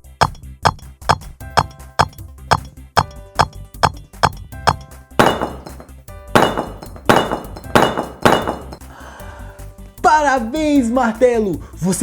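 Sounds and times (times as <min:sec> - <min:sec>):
hammer striking concrete: 0:00.0 - 0:08.9
background music: 0:00.0 - 0:12.0.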